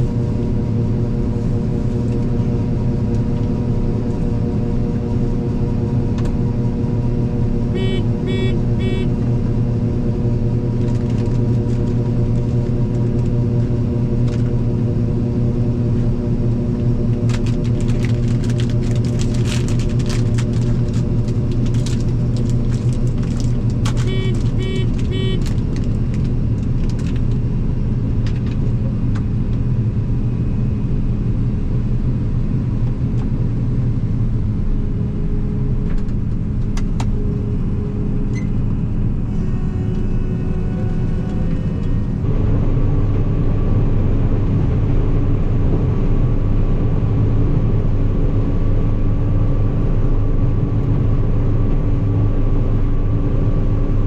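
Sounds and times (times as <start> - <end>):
vehicle engine running: 0.0 - 54.0
quick electronic beeps: 7.8 - 9.1, 24.1 - 25.4.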